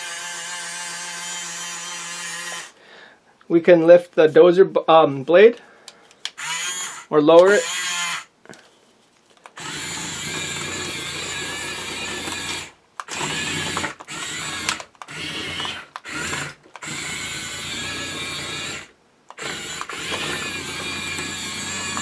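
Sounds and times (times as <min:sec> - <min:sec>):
small gear motors whirring: 0:00.0 - 0:02.8, 0:06.4 - 0:08.3, 0:09.6 - 0:22.0.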